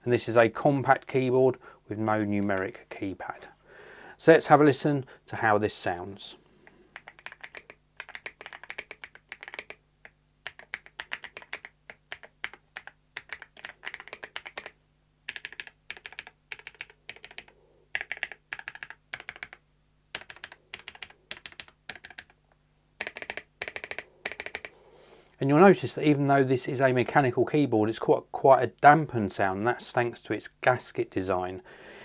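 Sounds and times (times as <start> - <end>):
mechanical keyboard typing: 7.0 - 22.4, 23.0 - 24.7.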